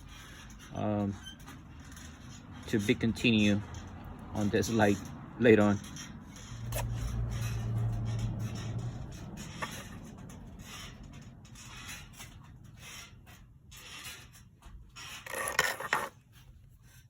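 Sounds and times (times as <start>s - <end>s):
small hard objects scraping: 15.0s - 16.2s.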